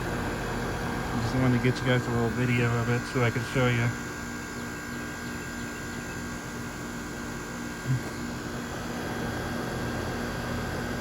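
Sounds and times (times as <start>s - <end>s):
compressor hum: 0.0s - 11.0s.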